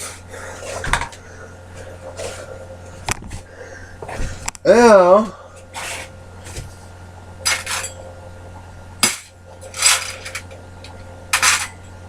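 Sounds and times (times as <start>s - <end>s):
low hum: 0.0s - 12.0s
metal pieces clinking: 9.6s - 10.6s.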